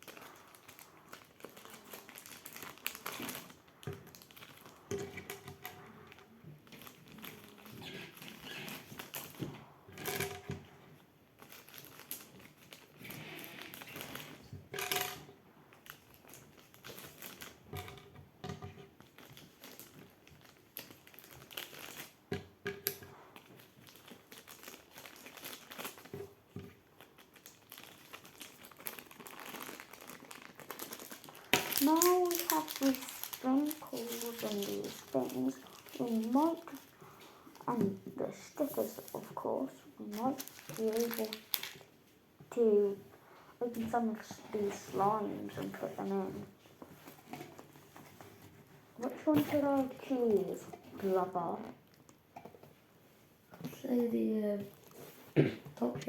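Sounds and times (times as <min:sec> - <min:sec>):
packaging crinkling: 0:00.0 - 0:09.4, 0:11.4 - 0:14.4, 0:15.7 - 0:17.7, 0:18.9 - 0:22.2, 0:23.0 - 0:42.0, 0:54.6 - 0:55.2.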